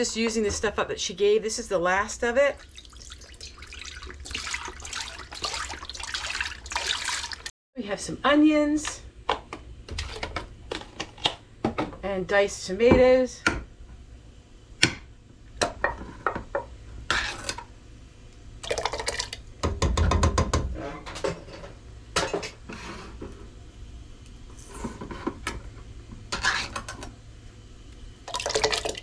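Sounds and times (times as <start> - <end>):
metal utensils clinking on pot: 26.4 - 27.1.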